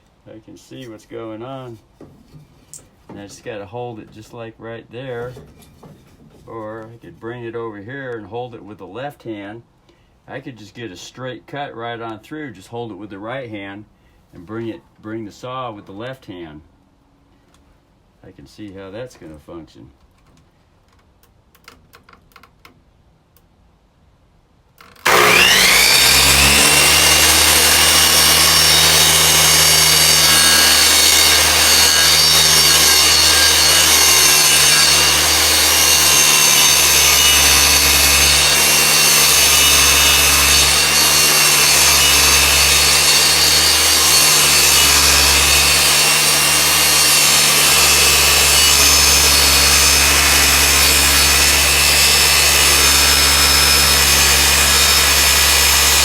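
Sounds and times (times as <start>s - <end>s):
electric saw cutting wood: 25.0s - 56.0s.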